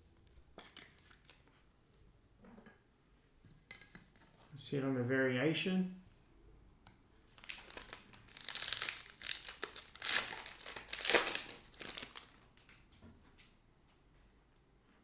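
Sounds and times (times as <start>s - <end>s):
foil wrapper crinkling: 7.3s - 12.9s.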